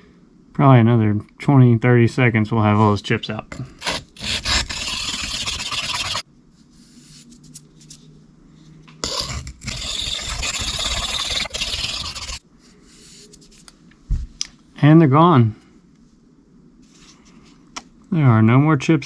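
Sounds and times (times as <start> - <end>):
knife grinding on sharpening stone: 3.8 - 6.2, 9.0 - 12.4.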